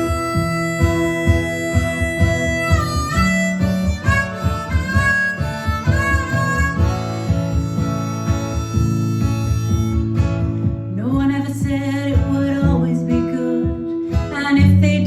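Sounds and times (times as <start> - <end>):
harmonica melody: 0.0 - 11.0
acoustic guitar strumming: 0.0 - 15.0.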